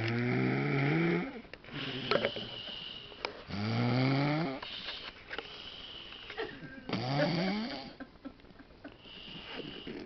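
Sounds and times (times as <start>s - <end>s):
man snoring: 0.1s - 2.3s, 3.5s - 4.6s, 6.9s - 8.0s.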